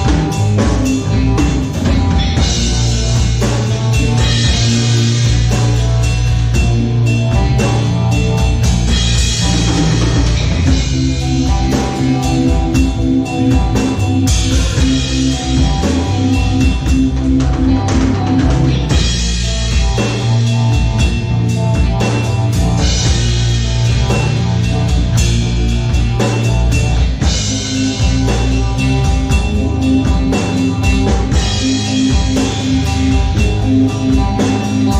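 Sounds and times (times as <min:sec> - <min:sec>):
drum kit steady beat: 0:00.0 - 0:34.9
guitar: 0:00.0 - 0:34.9
psychedelic rock music: 0:00.0 - 0:34.9.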